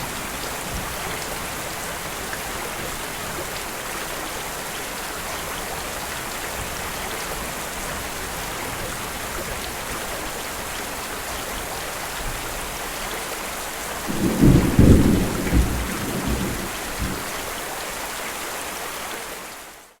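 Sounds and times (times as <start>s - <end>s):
steady rain falling: 0.0s - 20.0s
low roll of thunder: 14.1s - 17.4s.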